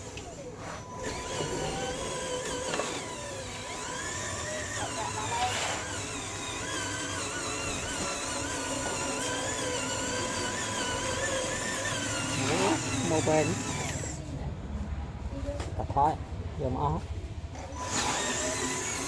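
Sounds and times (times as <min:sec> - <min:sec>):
toy electric motors whining: 0:00.0 - 0:14.2, 0:17.7 - 0:19.0
loud scrape: 0:05.2 - 0:06.2.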